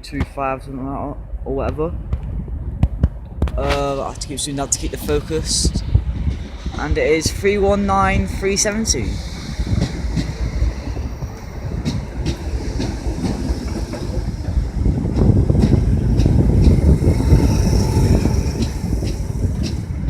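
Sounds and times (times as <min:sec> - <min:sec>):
train rumbling on rails: 0:00.0 - 0:20.0
wheels clicking over rail joints: 0:08.7 - 0:20.0.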